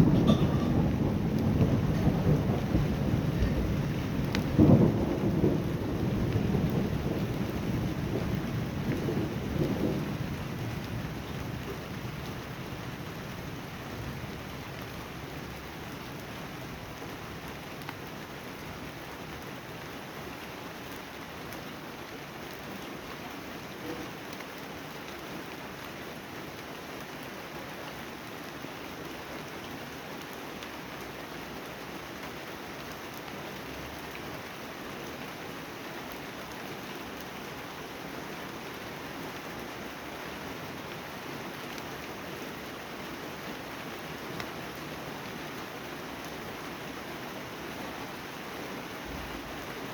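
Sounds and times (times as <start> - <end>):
thunder rumble: 0.0 - 11.2
steady rain falling: 0.0 - 49.9.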